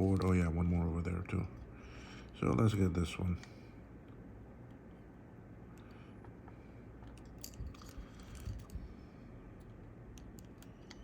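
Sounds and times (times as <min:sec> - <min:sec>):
air conditioner humming: 0:00.0 - 0:11.0.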